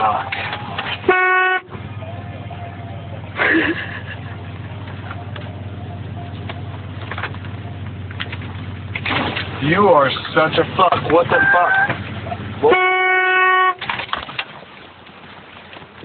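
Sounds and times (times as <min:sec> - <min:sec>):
car engine humming: 0:00.0 - 0:16.0.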